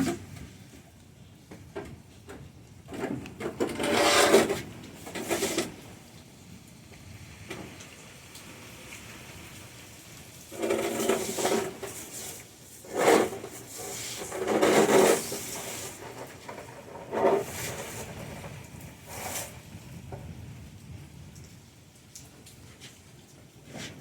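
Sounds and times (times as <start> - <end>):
rain hissing: 3.9 - 24.0
scraping clattering strokes: 10.6 - 19.6.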